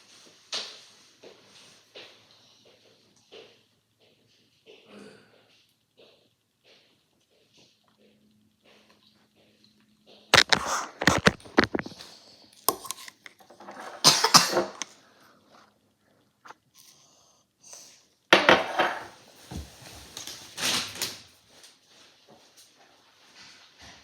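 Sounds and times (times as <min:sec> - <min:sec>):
objects clattering and rustling: 0:10.4 - 0:15.7, 0:18.4 - 0:21.8
dishes and cutlery clinking: 0:12.6 - 0:14.9.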